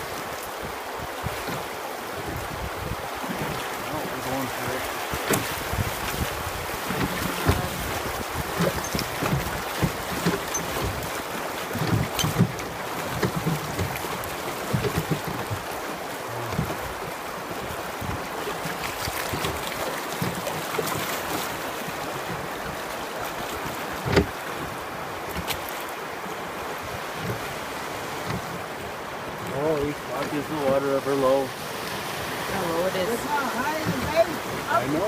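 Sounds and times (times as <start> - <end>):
wind buffeting microphone: 0.0 - 25.5, 26.5 - 35.0
rushing water: 0.0 - 35.0
low thumps: 16.3 - 17.0.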